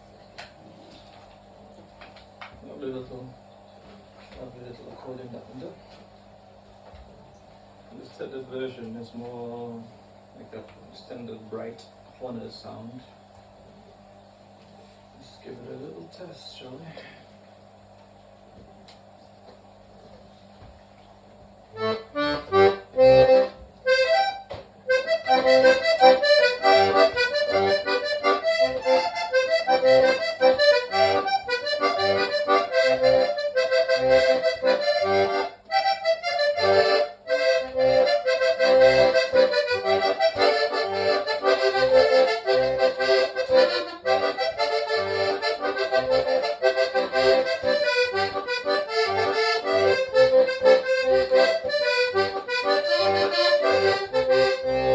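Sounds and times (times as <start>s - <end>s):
button accordion playing: 21.8s - 54.9s.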